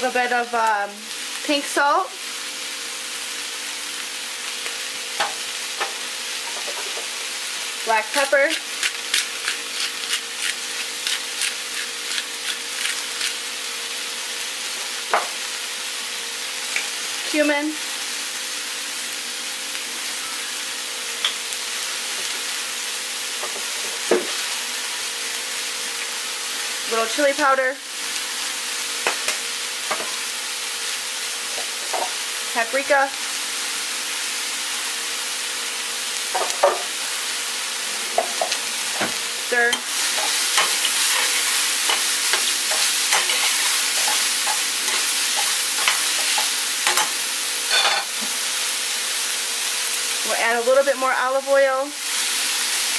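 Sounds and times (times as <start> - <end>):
vegetables sizzling in a frying pan: 0.0 - 52.9
utensil scraping a pan: 39.8 - 47.1.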